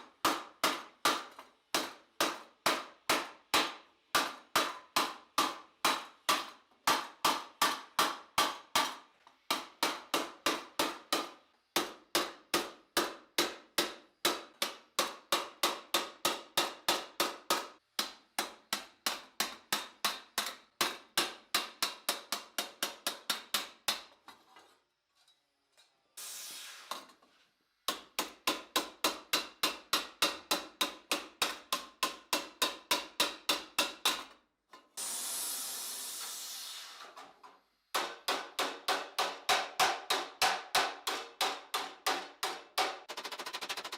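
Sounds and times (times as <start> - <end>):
brief hiss: 26.2 - 27.2, 35.0 - 37.3.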